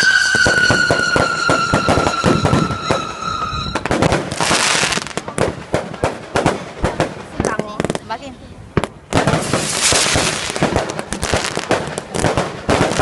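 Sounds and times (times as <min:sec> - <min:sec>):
firework whistle falling in pitch: 0:00.0 - 0:05.0
fireworks crackling: 0:00.0 - 0:13.0
sharp firework pops: 0:03.8 - 0:13.0.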